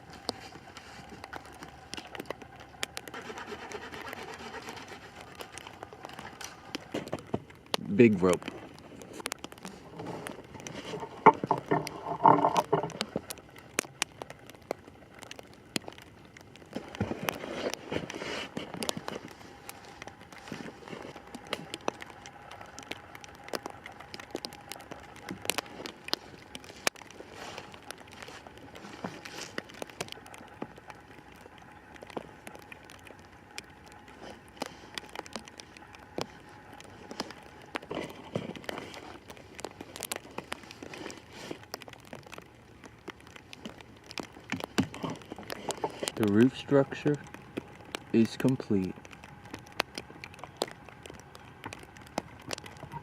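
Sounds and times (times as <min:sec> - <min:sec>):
faint steady hum: 0:00.0 - 0:53.0
rope and poles rustling and clicking: 0:00.0 - 0:53.0.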